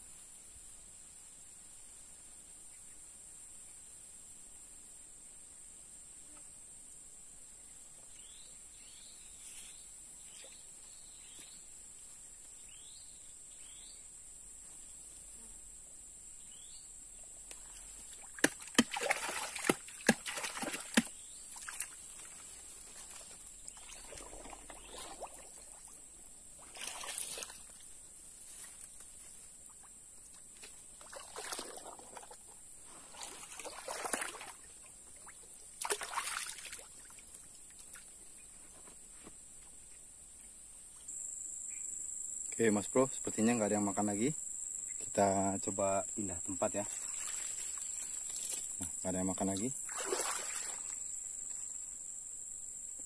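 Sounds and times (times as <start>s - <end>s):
high buzz of insects: 0.0s - 53.0s
water sloshing and splashing: 17.7s - 26.0s, 26.6s - 27.9s, 30.6s - 32.4s, 33.0s - 38.1s, 46.9s - 48.5s, 49.8s - 51.0s.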